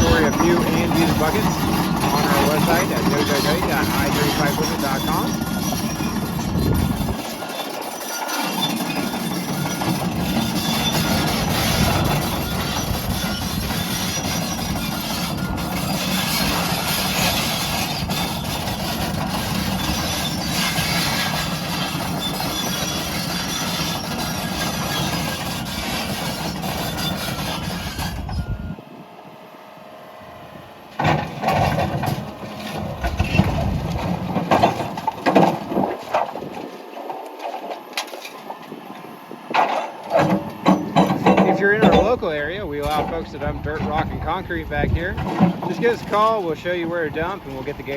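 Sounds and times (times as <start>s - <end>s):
excavator diesel engine running: 0.0s - 47.9s
sharp knocks and clatters: 39.5s - 42.1s.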